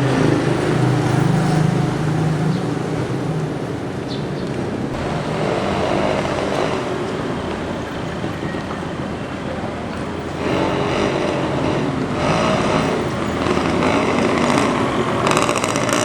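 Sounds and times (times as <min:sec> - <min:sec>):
traffic noise: 0:00.0 - 0:16.0
vehicle engine humming: 0:00.0 - 0:16.0.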